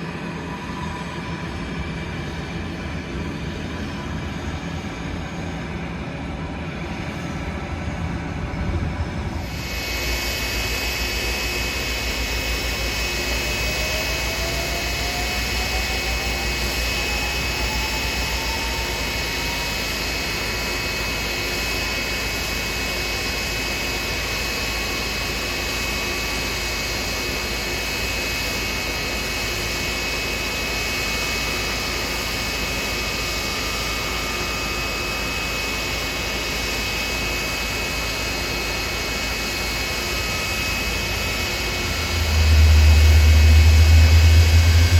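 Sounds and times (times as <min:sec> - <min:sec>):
jet engines rushing and whining: 0:00.0 - 0:44.9
rising engine tone: 0:39.8 - 0:44.9.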